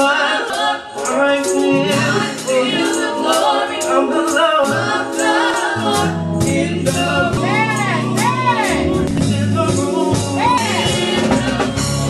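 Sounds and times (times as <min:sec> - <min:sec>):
choir singing: 0:00.0 - 0:09.1, 0:09.8 - 0:12.0
bass line: 0:05.8 - 0:12.0.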